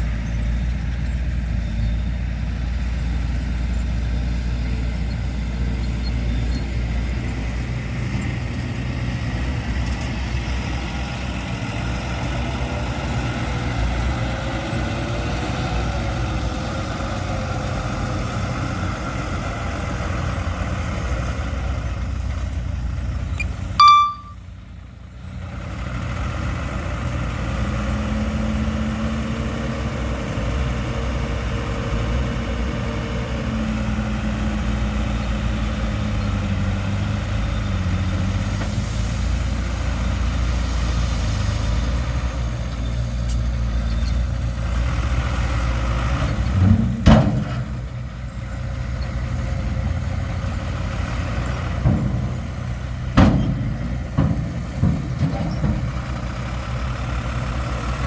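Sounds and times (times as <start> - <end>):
diesel engines running: 0.0 - 58.0
sharp metallic clank: 23.4 - 24.4.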